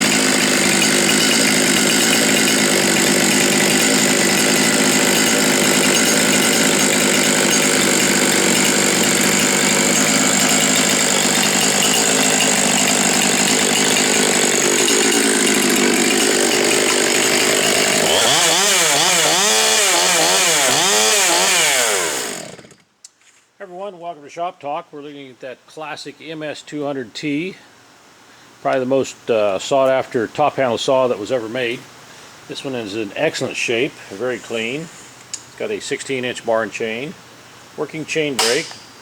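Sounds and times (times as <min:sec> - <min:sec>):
chainsaw engine running: 0:00.0 - 0:22.8, 0:38.4 - 0:39.0.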